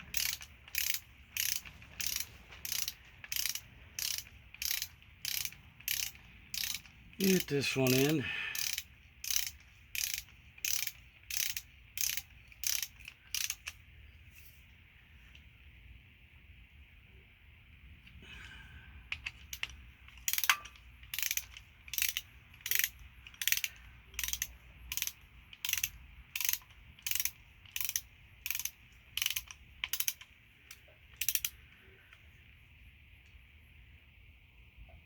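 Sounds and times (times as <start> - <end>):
ratchet wrench clicking: 0.0 - 13.9, 19.1 - 31.8.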